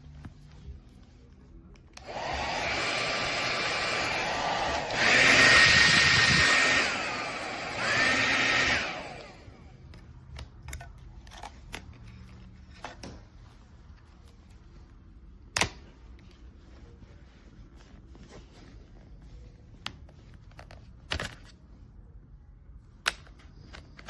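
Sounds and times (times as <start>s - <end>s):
hair dryer blowing: 2.0s - 9.7s.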